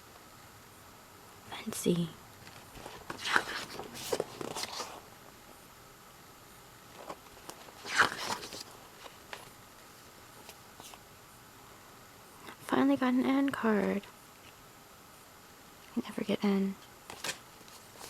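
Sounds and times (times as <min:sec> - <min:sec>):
paper and plastic rustling: 0:02.4 - 0:05.1, 0:06.9 - 0:11.0, 0:17.1 - 0:18.0.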